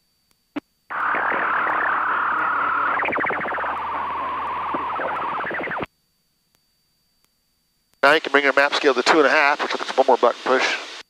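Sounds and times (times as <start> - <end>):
radio click: 0.9 - 5.9
radio hiss: 0.9 - 5.9, 8.0 - 11.0
distorted radio voice: 8.0 - 11.0.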